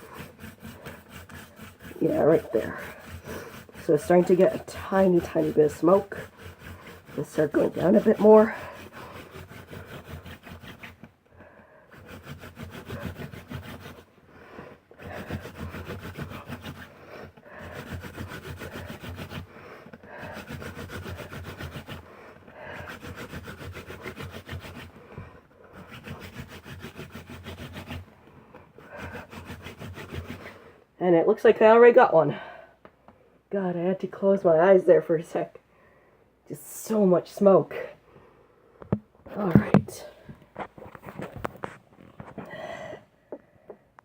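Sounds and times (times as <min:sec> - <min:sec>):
hand drill rubbing on wood: 0:00.0 - 0:30.8, 0:38.9 - 0:42.6.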